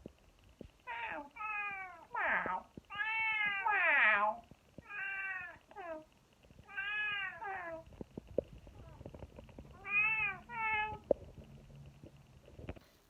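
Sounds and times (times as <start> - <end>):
cat meowing: 0.9 - 7.8, 9.7 - 11.0.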